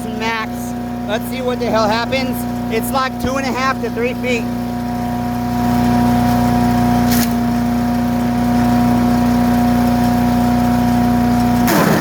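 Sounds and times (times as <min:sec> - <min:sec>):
wood chipper engine running: 0:00.0 - 0:12.0
sharp crack of branch: 0:07.0 - 0:07.5.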